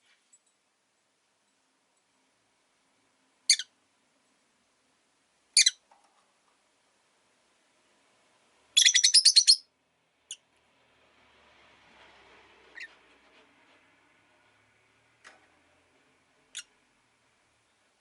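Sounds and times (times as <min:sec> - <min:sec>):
bird chirping: 0:03.5 - 0:03.7, 0:05.6 - 0:05.8, 0:08.8 - 0:09.7, 0:16.5 - 0:16.8.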